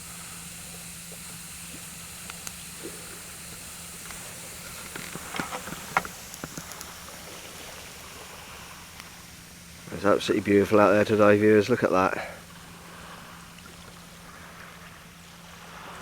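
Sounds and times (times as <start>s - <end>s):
campfire crackling and popping: 1.2s - 10.0s.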